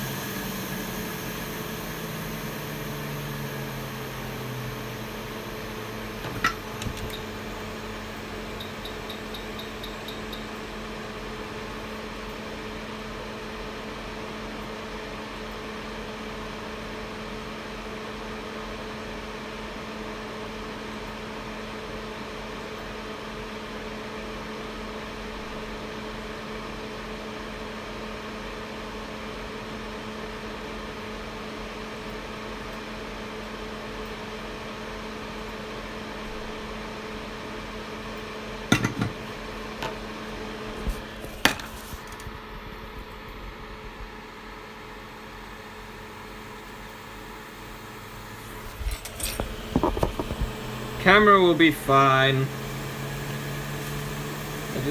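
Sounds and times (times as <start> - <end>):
fan motor hum: 0.0 - 14.2, 34.0 - 54.9.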